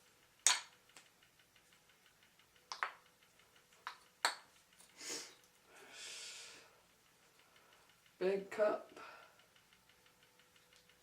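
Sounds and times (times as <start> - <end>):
soft hiss: 0.0 - 11.0
wooden toy clicks and taps: 0.4 - 4.9.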